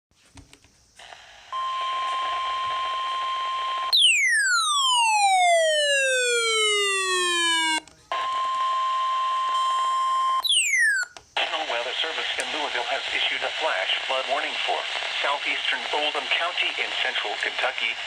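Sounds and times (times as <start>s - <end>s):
radio static: 1.0s - 3.9s, 11.4s - 18.0s
steady alarm tone: 1.6s - 11.1s.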